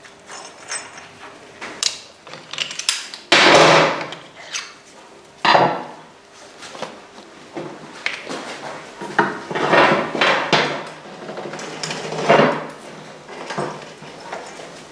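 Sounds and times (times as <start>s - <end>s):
tools and metal parts clattering: 0.0s - 4.8s, 8.3s - 14.9s.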